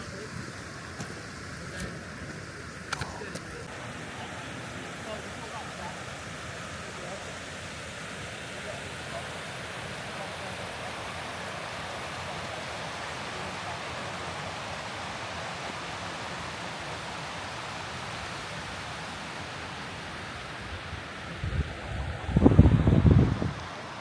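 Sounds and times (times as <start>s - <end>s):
wind gust buffeting microphone: 20.7s - 23.7s
strong wind rushing: 21.3s - 23.6s.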